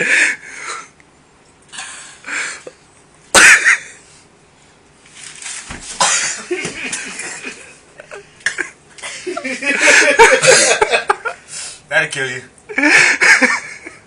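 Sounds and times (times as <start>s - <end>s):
man coughing and spluttering: 3.3s - 3.9s, 6.0s - 6.6s.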